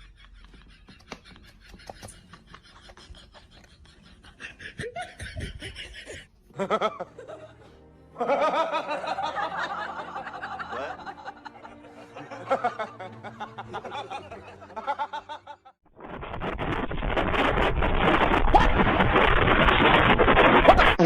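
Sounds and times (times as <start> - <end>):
people snickering and chuckling: 0.0 - 15.8.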